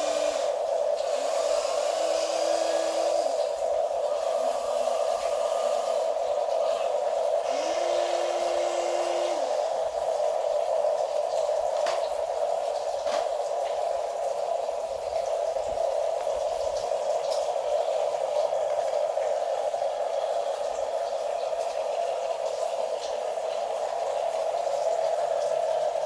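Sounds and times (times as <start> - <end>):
small electric motors whirring: 0.0 - 10.0.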